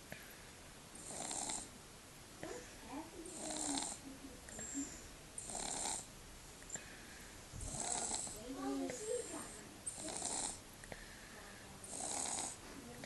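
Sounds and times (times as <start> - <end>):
baby snuffle-snoring: 1.0 - 1.7, 2.5 - 4.0, 4.6 - 6.1, 7.6 - 10.6, 11.8 - 12.6.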